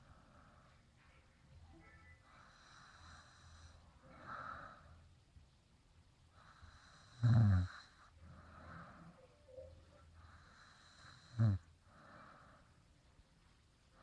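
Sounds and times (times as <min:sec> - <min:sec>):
woman snoring: 0:06.7 - 0:08.0, 0:10.4 - 0:11.6.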